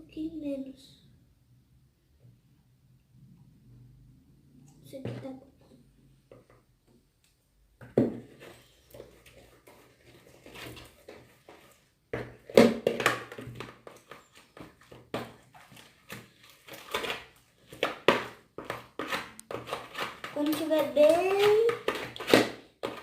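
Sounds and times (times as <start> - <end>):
thick slime being stirred: 8.2 - 23.0
utensil scraping container: 13.6 - 23.0.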